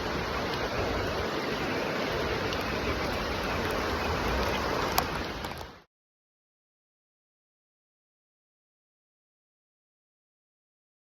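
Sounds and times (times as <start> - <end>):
heavy rain hissing: 0.0 - 5.9.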